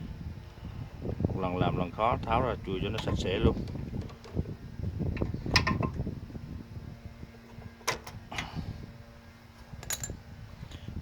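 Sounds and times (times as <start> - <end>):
faint steady hum: 0.0 - 11.0
tools and metal parts clicking: 9.8 - 10.2.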